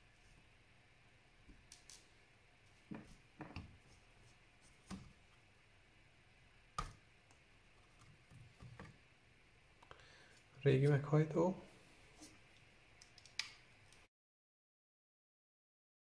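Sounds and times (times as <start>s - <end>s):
clicks of small parts handled: 13.0s - 14.0s.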